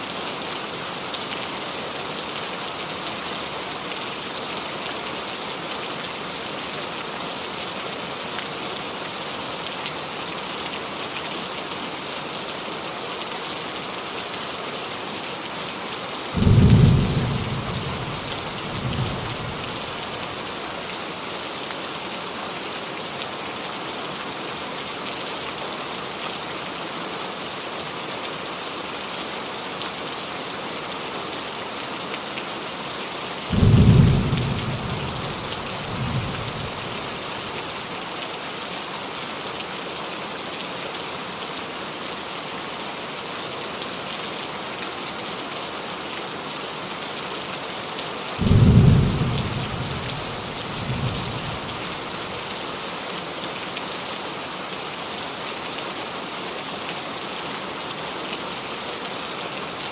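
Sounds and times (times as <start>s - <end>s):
rain on a roof: 0.0s - 59.9s
low thunder rumbles: 16.4s - 19.9s, 33.5s - 37.1s, 48.4s - 52.0s.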